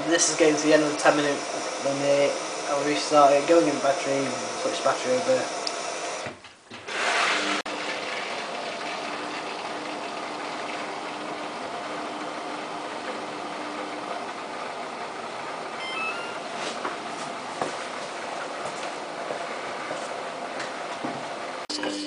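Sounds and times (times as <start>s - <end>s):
washing machine running: 0.0s - 22.0s
short high tones: 15.8s - 16.7s.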